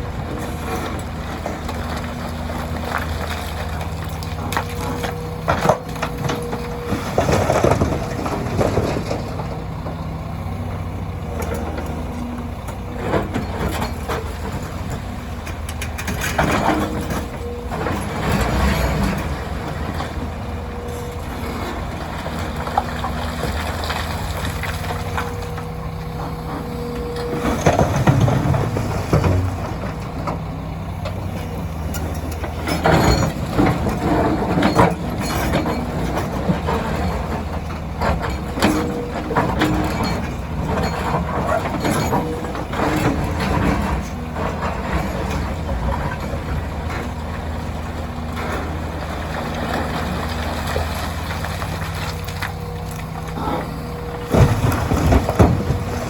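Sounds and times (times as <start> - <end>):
excavator diesel engine running: 0.0 - 56.0
gravel and rock clattering: 0.0 - 56.0.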